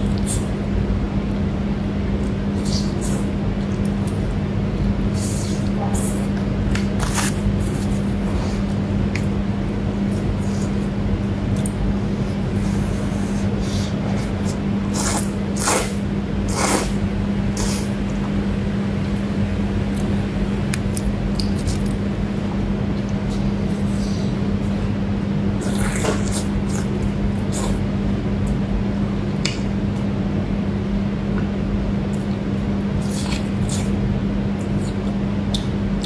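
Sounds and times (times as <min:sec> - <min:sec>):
steady low hum and hiss: 0:00.0 - 0:36.0
wet chewing and smacking: 0:19.9 - 0:22.1.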